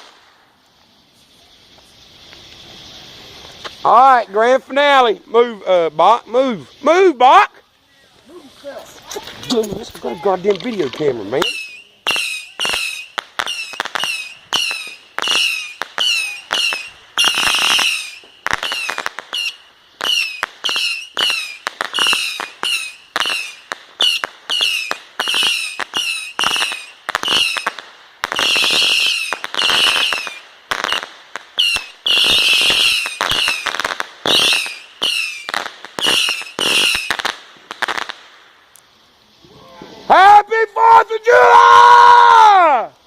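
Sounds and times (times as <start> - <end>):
firework shots with falling whistles: 0.0 - 3.9, 11.3 - 38.4.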